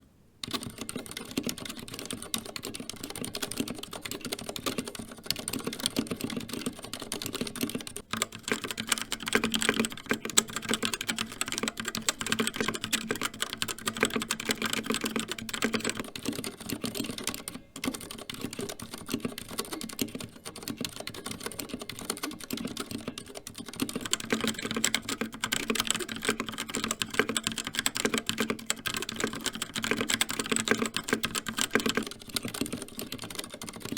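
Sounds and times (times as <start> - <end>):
fast mechanical keyboard typing: 0.4 - 33.9.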